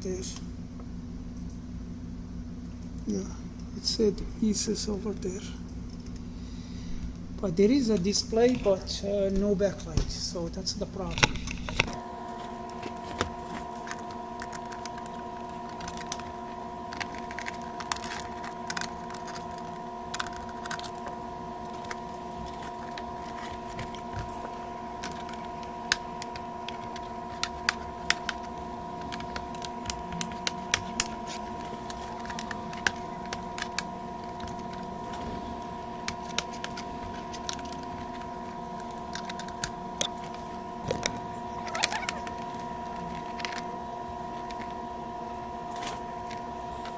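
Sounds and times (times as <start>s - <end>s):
steady tonal hum: 0.0s - 46.9s
tools and plastic parts clicking: 11.1s - 43.7s, 44.4s - 44.8s.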